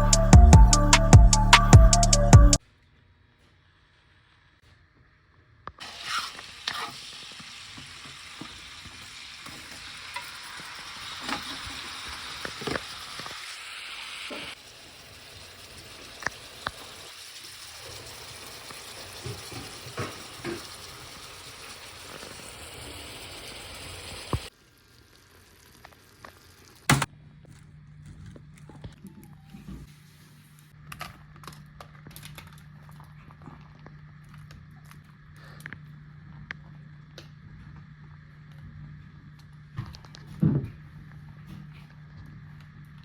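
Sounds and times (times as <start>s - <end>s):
food sizzling in a pan: 5.8s - 26.9s.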